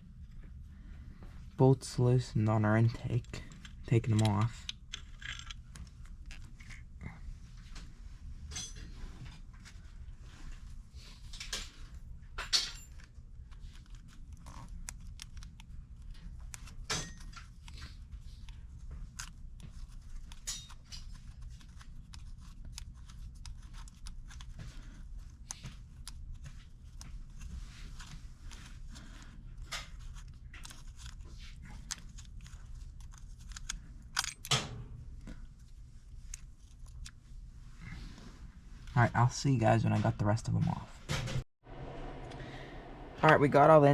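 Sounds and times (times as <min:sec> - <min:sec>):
steady low hum: 0:40.8 - 0:43.9.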